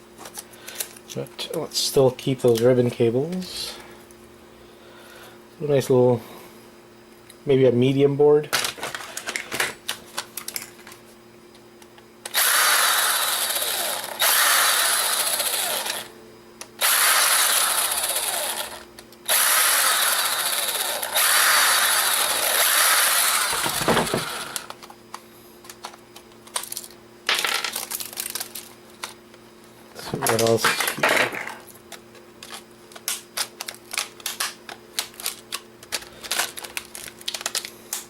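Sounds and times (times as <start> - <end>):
electric screwdriver running: 12.3 - 16.1, 16.8 - 24.8.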